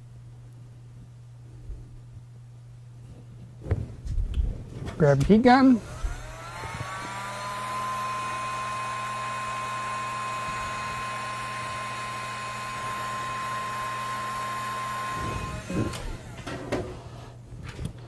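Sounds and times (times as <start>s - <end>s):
heat gun fan whining: 4.3s - 18.0s.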